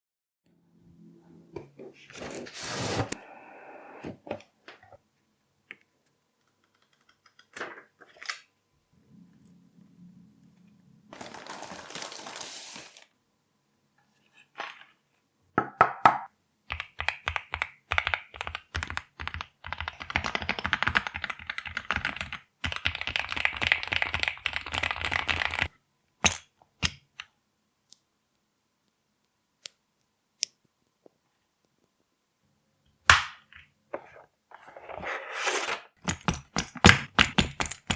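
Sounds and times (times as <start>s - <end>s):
keyboard typing: 6.4s - 7.6s, 16.7s - 25.7s.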